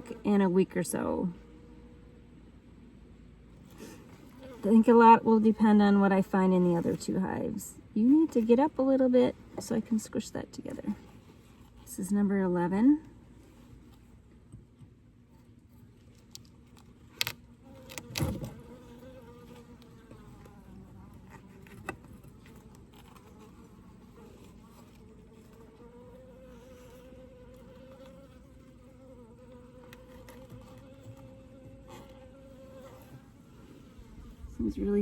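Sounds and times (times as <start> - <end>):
honeybees buzzing: 17.2 - 35.0.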